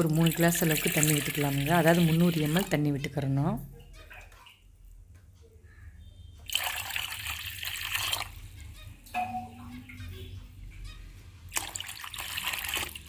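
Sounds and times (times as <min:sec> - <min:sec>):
water pouring into a pot: 0:00.0 - 0:02.7, 0:06.5 - 0:08.5, 0:11.5 - 0:13.0.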